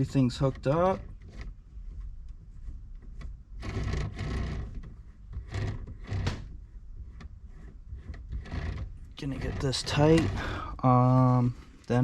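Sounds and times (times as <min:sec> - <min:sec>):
light clicks and knocks: 0:00.0 - 0:10.6
parts rubbing and scraping: 0:00.0 - 0:12.0.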